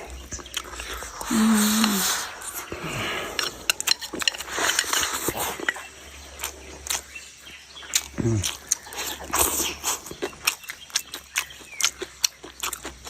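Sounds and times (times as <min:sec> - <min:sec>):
noisy chewing and slurping: 0:00.0 - 0:13.0
person humming: 0:01.2 - 0:03.2.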